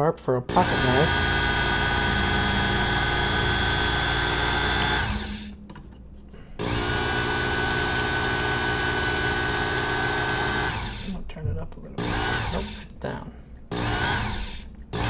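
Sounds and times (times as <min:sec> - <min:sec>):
electric belt knife sharpener running: 0:00.5 - 0:05.6, 0:06.6 - 0:11.2, 0:12.0 - 0:12.9, 0:13.7 - 0:15.0.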